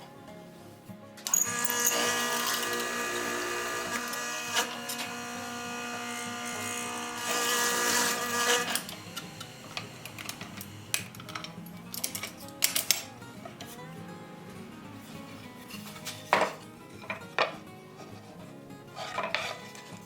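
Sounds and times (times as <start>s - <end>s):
power tool motor running: 1.3s - 11.4s.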